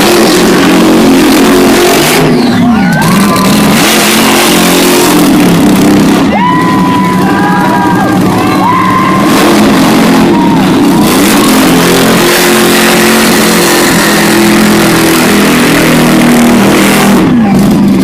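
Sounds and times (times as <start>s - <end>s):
vehicle engine revving hard: 0.0s - 18.0s
high squealing tone: 6.2s - 16.6s.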